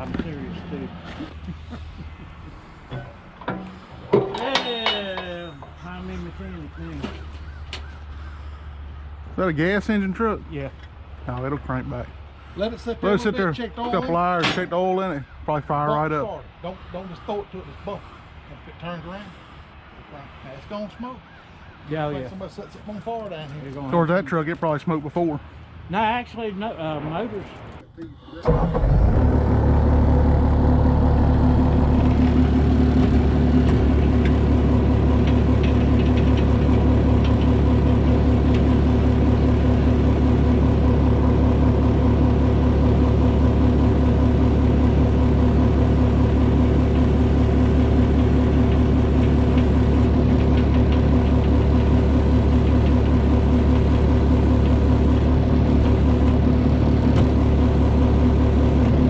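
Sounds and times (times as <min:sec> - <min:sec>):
vehicle engine droning: 0:00.0 - 0:14.6, 0:26.9 - 0:59.0.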